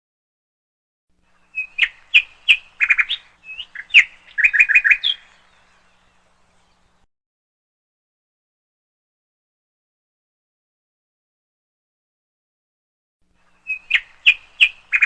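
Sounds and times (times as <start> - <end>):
bird chirping: 1.3 - 7.1, 13.4 - 15.0.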